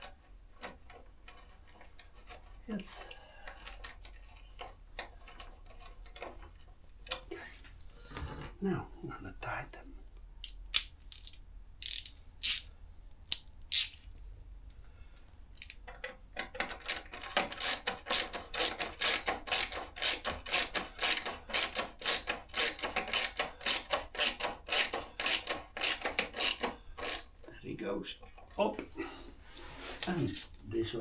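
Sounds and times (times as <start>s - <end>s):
hand ratchet clicking: 10.4s - 12.7s, 13.3s - 14.0s, 15.6s - 15.9s, 16.5s - 27.4s.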